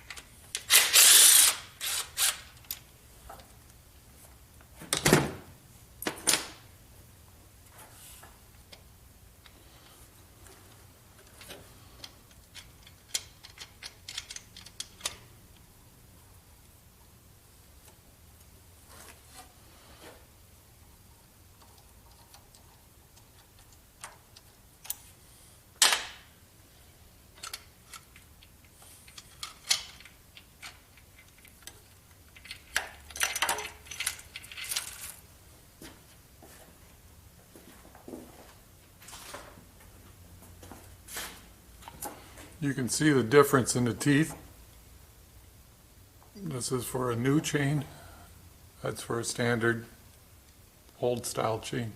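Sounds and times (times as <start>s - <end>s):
metal tools clinking and rattling: 29.1s - 35.2s.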